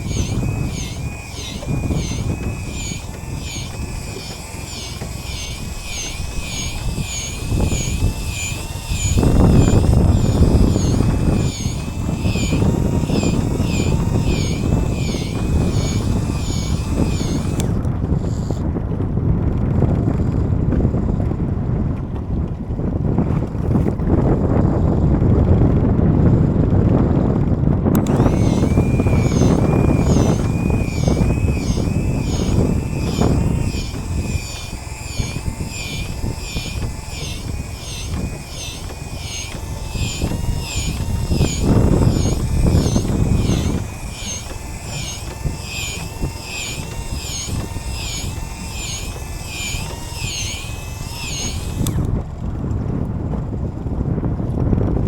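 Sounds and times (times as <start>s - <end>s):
high chirping: 0.0s - 17.8s, 28.0s - 52.0s
wind buffeting microphone: 0.0s - 55.0s.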